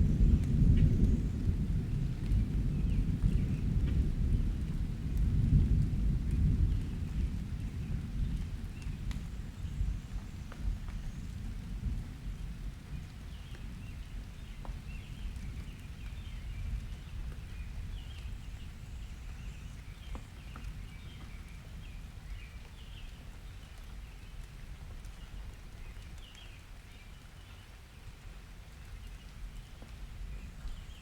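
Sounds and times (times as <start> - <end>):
thunder rumbling: 0.0 - 20.0
raindrop ticks: 0.1 - 31.0.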